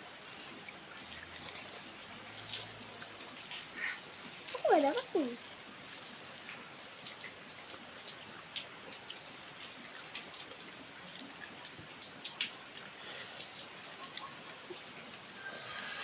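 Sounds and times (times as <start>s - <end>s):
light drips and taps: 0.0s - 15.4s
steady rain falling: 0.0s - 16.0s.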